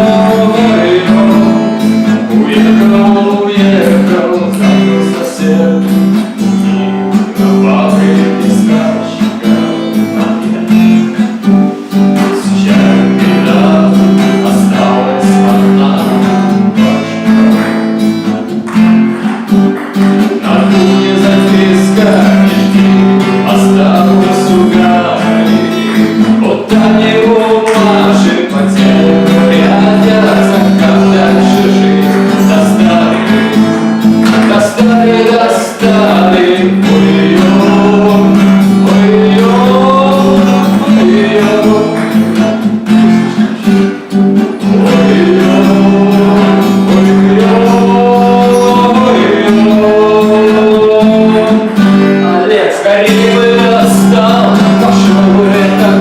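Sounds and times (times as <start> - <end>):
acoustic guitar strummed and plucked: 0.0 - 56.0.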